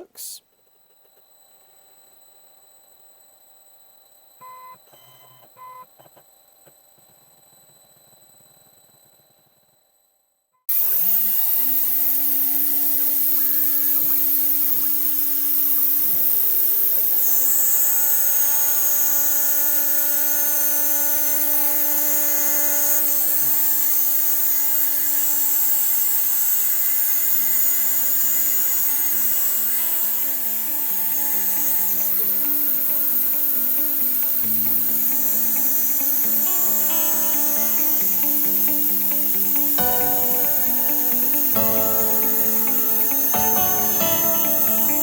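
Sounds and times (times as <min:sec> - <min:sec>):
cnc spindle spinning: 0:00.5 - 0:45.0
high-pitched metal cutting whine: 0:00.6 - 0:05.5, 0:06.1 - 0:45.0.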